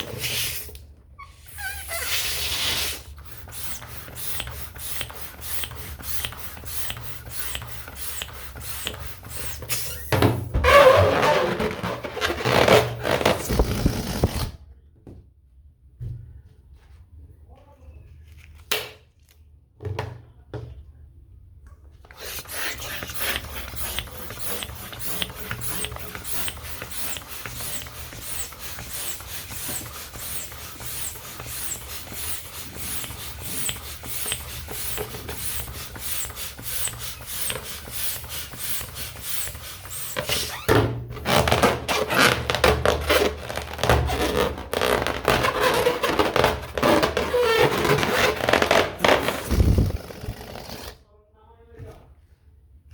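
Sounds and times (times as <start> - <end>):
balloons squeaking and rustling: 0.0 - 14.6, 22.1 - 51.0.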